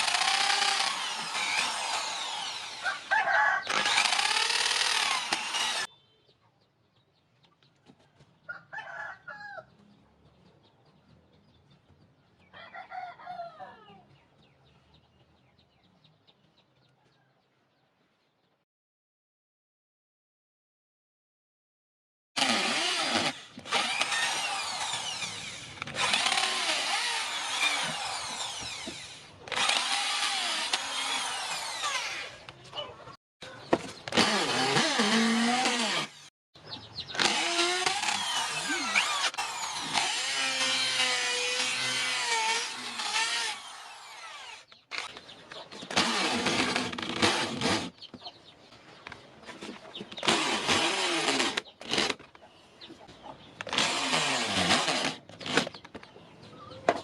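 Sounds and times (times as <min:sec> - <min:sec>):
power tool grinding a knife: 0:00.0 - 0:05.9, 0:22.4 - 0:32.4, 0:34.1 - 0:36.3, 0:37.2 - 0:45.1, 0:53.6 - 0:55.8.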